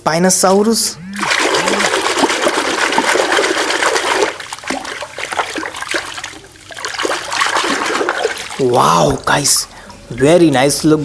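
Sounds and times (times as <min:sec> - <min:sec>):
water running and splashing: 0:01.2 - 0:09.6.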